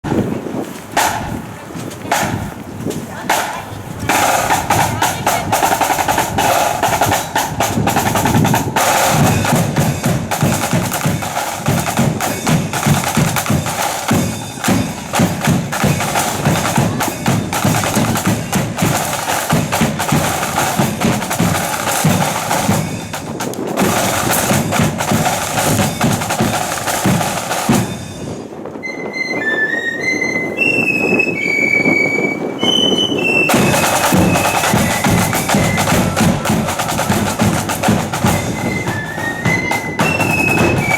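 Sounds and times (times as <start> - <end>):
snare drums rolling: 1.0 - 1.5, 2.1 - 2.6, 3.3 - 28.6, 32.3 - 40.9
bass drum beat: 3.3 - 28.0, 33.5 - 40.9
flutes playing high melody: 27.8 - 40.9.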